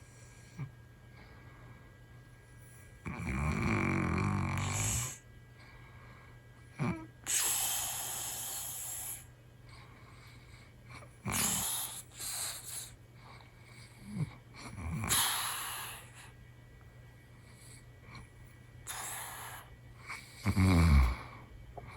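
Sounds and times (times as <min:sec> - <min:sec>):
man snoring: 0:03.1 - 0:05.2, 0:06.8 - 0:09.2, 0:11.2 - 0:12.9, 0:14.1 - 0:16.2, 0:18.9 - 0:21.4.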